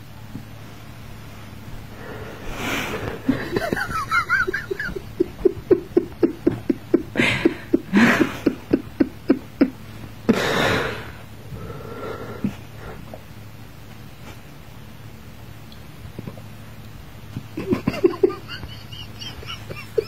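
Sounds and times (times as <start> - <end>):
loud breathy burst: 1.9 - 3.6, 10.3 - 13.0
person laughing: 3.1 - 10.5, 17.5 - 20.0.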